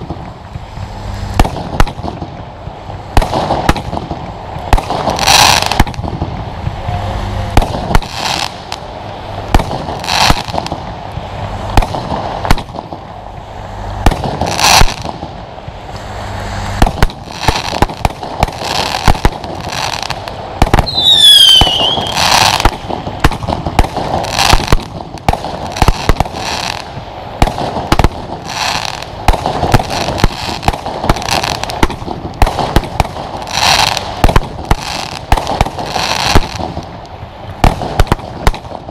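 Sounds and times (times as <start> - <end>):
fireworks launching and bursting: 0.0 - 38.9
firework whistle sliding down: 20.8 - 22.8.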